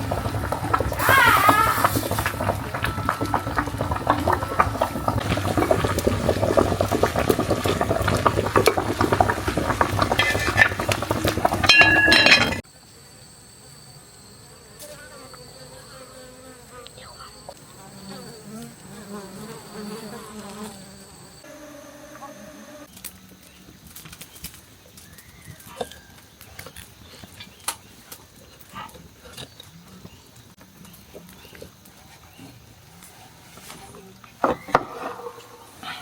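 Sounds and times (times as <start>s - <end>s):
dense crackling with clicks: 0.0s - 11.7s.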